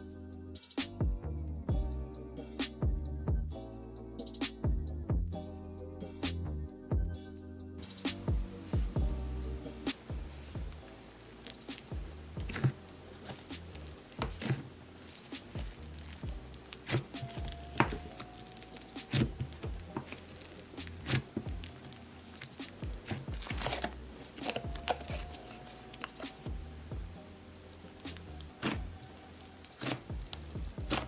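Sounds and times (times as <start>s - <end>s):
slime popping and crackling: 9.8s - 31.0s.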